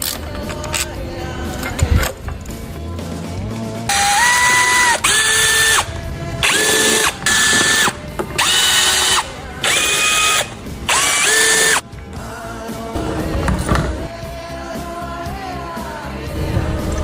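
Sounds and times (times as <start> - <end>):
power drill whining: 3.9 - 11.8.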